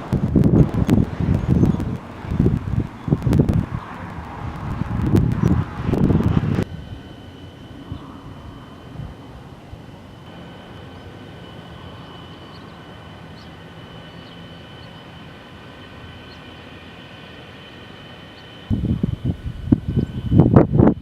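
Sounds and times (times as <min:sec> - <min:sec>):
loud low gusting rumble: 0:00.0 - 0:21.0
outdoor background noise: 0:00.0 - 0:21.0
faint high-pitched tone: 0:06.6 - 0:21.0.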